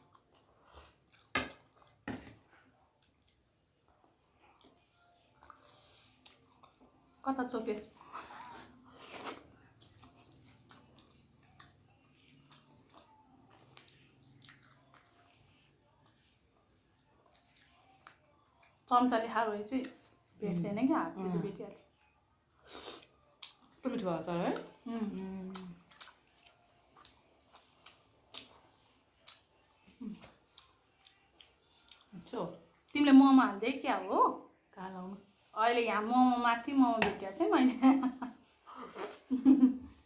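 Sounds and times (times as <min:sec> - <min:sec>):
person chewing: 0:00.0 - 0:02.0, 0:02.8 - 0:07.1, 0:08.0 - 0:18.8, 0:21.9 - 0:23.8, 0:25.5 - 0:32.2.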